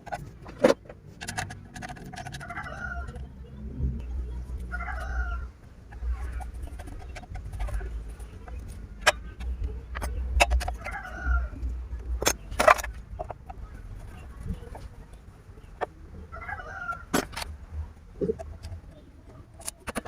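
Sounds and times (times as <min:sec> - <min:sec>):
sharp clicks and knocks: 0:00.0 - 0:03.4, 0:05.9 - 0:16.0, 0:16.9 - 0:20.0
chickens clucking: 0:00.0 - 0:20.0.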